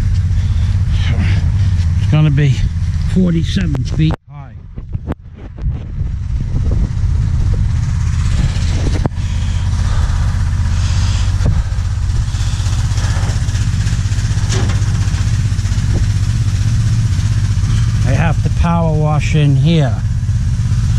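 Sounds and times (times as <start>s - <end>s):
pressure washer motor drone: 6.6s - 20.9s
sharp knocks: 11.4s - 16.6s.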